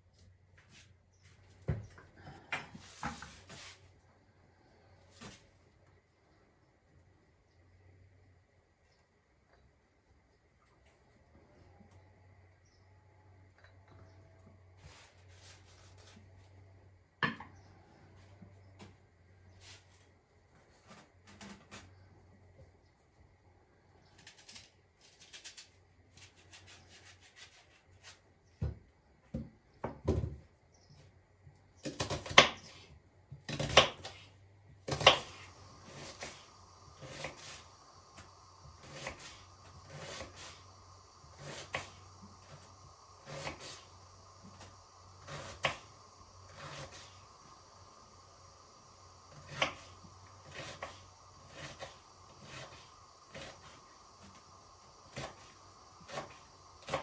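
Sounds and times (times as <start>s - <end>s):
steady hum: 33.8s - 57.0s.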